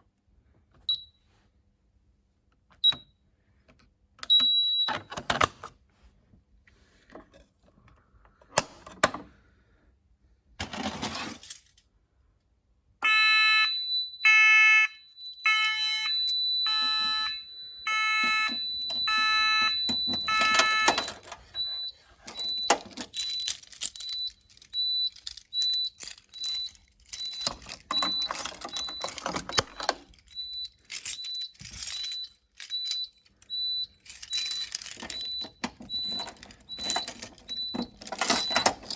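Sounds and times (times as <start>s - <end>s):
high-pitched beep: 13.0s - 25.0s
fire alarm pulsed tone: 13.0s - 38.9s
handling clicks and rustling: 14.2s - 38.9s.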